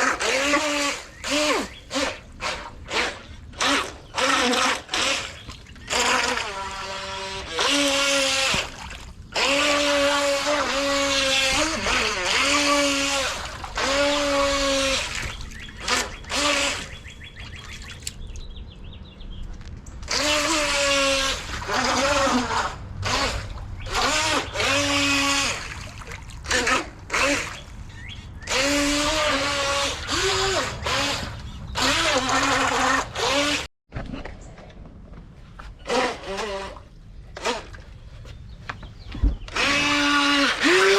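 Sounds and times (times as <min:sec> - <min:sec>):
toy boat electric motor whining: 0:00.0 - 0:17.1, 0:20.1 - 0:25.7, 0:26.4 - 0:27.8, 0:28.4 - 0:33.7, 0:35.8 - 0:36.8, 0:39.5 - 0:40.9.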